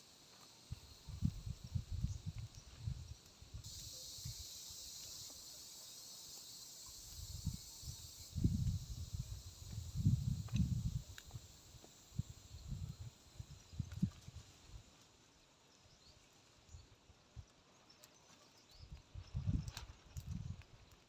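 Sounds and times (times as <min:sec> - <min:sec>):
steady high hiss: 0:00.0 - 0:15.1
wind buffeting microphone: 0:00.8 - 0:03.7, 0:07.0 - 0:11.4, 0:19.2 - 0:20.6.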